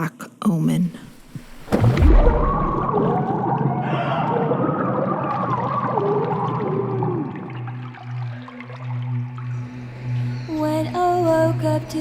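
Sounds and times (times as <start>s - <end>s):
steady rumble: 1.0s - 3.6s
deep boom dropping in pitch: 1.2s - 3.8s.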